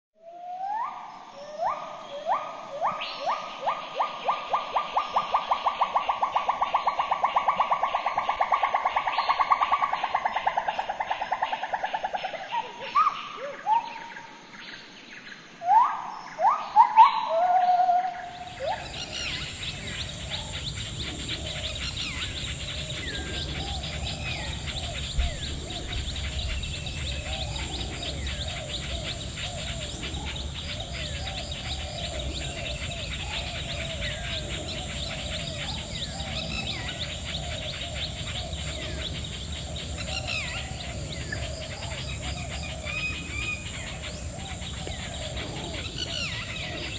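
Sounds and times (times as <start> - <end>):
loud rising bird calls: 18.1 - 46.9
small birds chirping: 18.1 - 46.9
steady background hum: 18.2 - 46.9.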